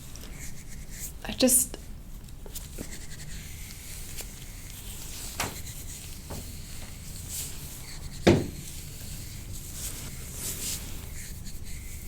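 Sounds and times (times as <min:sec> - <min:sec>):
hands rubbing a patient: 0:02.5 - 0:12.0
sharp loud knock: 0:08.2 - 0:08.6.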